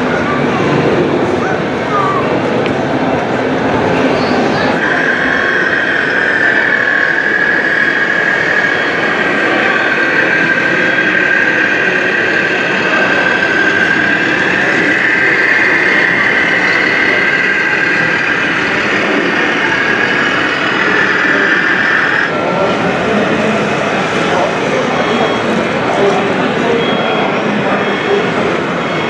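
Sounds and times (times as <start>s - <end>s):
rough mechanical rattle: 4.8s - 25.4s
electric motor and gearbox whine: 4.8s - 26.2s.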